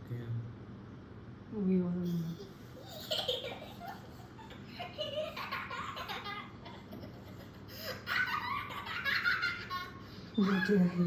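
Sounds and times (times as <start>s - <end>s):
baby laughing: 2.4s - 10.9s.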